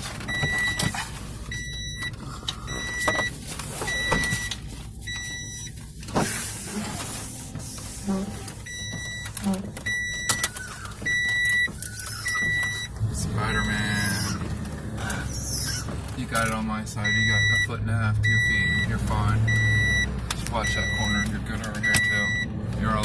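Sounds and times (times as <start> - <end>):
car engine idling: 0.0 - 23.0
car warning chime beeping: 0.1 - 5.9, 7.4 - 23.0.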